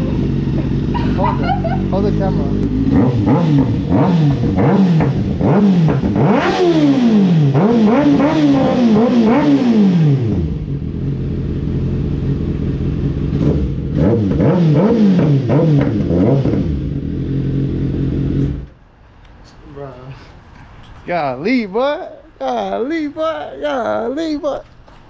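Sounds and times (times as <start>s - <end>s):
motorcycle engine idling: 0.0s - 6.2s, 10.3s - 14.0s
motorcycle engine revving: 0.0s - 18.8s.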